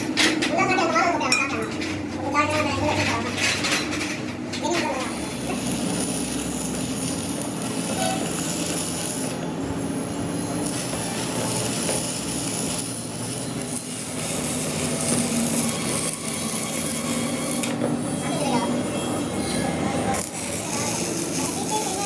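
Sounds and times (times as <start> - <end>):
abrasive rasping on steel: 4.6 - 22.0.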